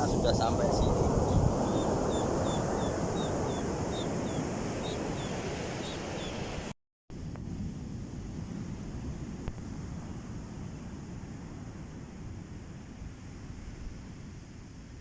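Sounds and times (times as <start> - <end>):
bird chirping: 0.0 - 6.5
surf: 0.0 - 6.7
wind: 0.0 - 15.0.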